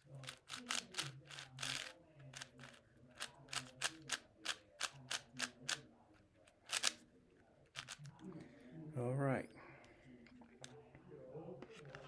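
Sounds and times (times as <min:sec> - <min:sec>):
puzzle cube clicking turns: 0:00.2 - 0:05.8, 0:06.6 - 0:07.0, 0:07.8 - 0:08.0.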